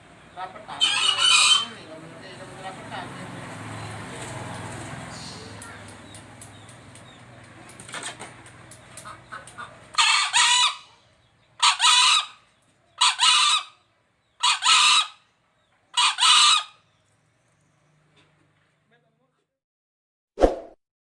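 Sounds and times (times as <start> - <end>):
junglefowl crowing: 0.4 - 1.9, 9.0 - 11.0, 11.6 - 12.4, 13.0 - 13.8, 14.4 - 15.2, 15.9 - 16.8.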